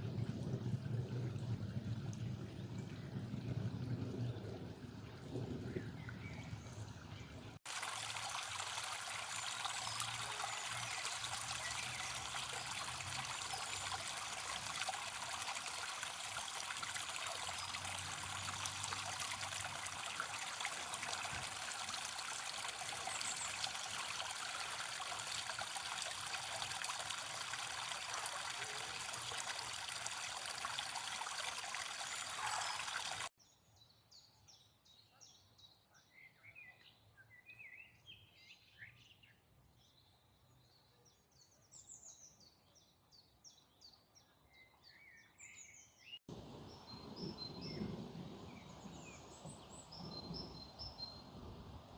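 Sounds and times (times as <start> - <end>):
stream trickling: 0.0 - 33.4, 46.2 - 51.9.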